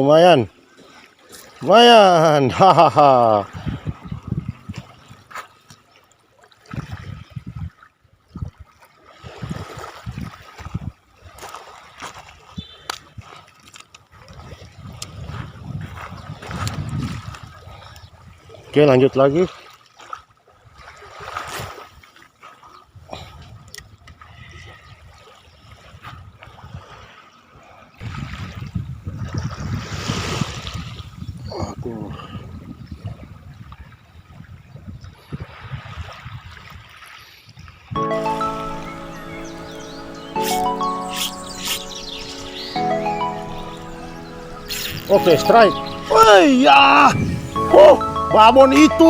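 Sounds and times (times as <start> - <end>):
water lapping on shore: 0.0 - 31.2, 32.7 - 48.6
water sloshing and gurgling: 3.4 - 18.6
low rumbling: 45.6 - 49.0.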